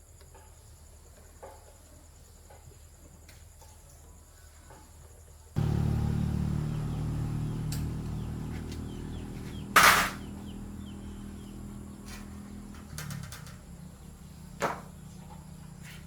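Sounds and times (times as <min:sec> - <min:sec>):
electric fan humming: 0:05.6 - 0:15.8
faint bird or insect chirps: 0:05.7 - 0:16.0.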